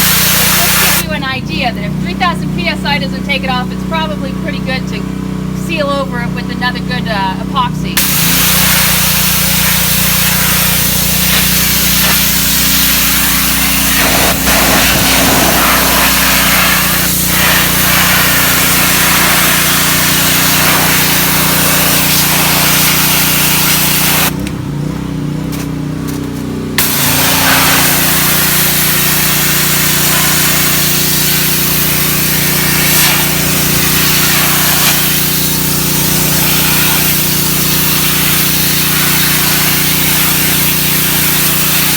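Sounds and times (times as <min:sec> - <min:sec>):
hissing high-pressure water spray: 0:00.0 - 0:01.1, 0:08.0 - 0:24.3, 0:26.8 - 0:41.9
pressure washer engine running: 0:00.0 - 0:41.9.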